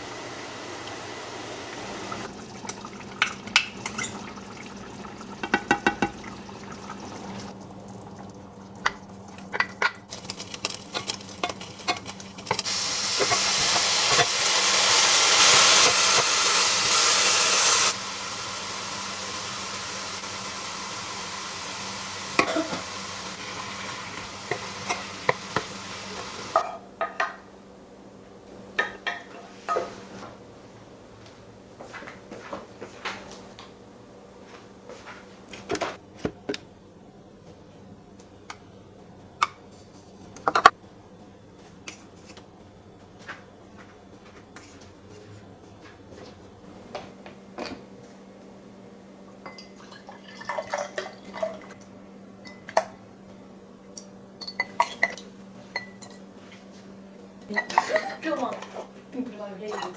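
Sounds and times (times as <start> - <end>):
rushing hiss of frying: 0.0 - 7.5, 12.3 - 26.6
utensils clinking against pans: 2.8 - 7.5, 8.8 - 14.4, 24.2 - 27.4, 54.4 - 56.3, 57.4 - 59.0, 59.6 - 59.9.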